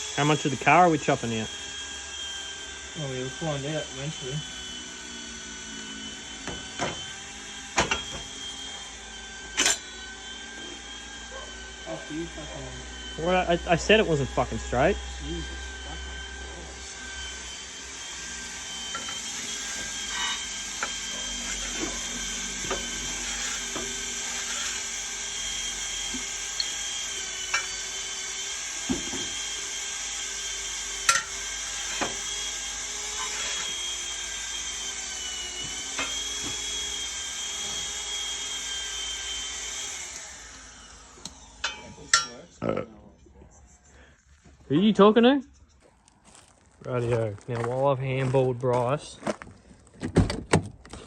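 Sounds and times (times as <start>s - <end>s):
power tool whining: 0.0s - 45.8s.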